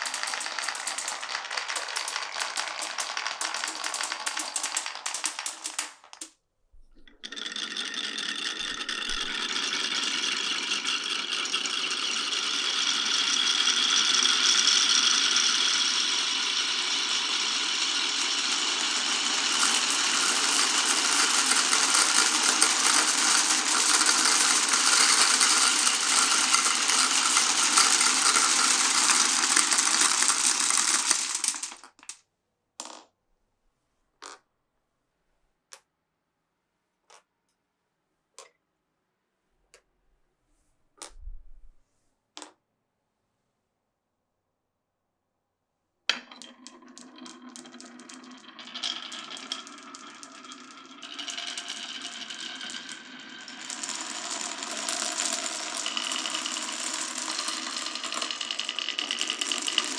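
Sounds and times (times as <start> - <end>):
glass marbles rolling and clattering: 0.0 - 6.3, 7.2 - 32.1, 46.1 - 59.9.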